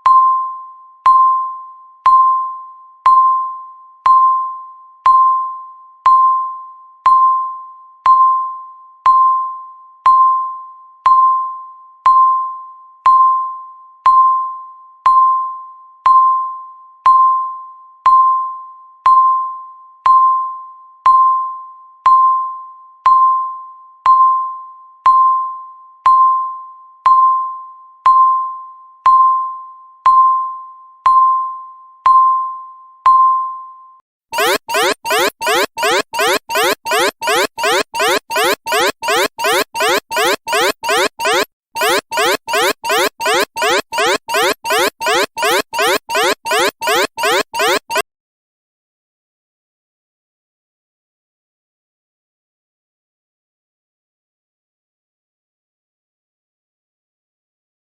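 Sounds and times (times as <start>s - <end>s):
countdown timer beeps: 34.4s - 48.0s.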